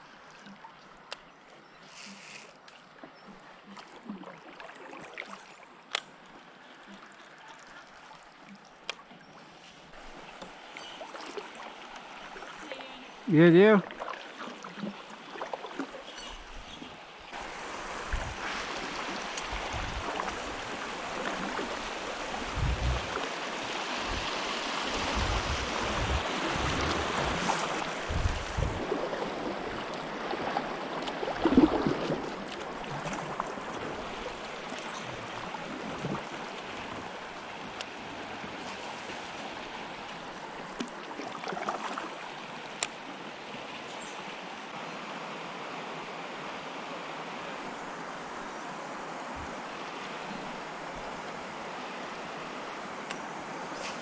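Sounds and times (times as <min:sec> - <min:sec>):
river water rushing and splashing: 0:00.0 - 0:54.0
low thumps: 0:22.4 - 0:23.2, 0:24.9 - 0:28.8.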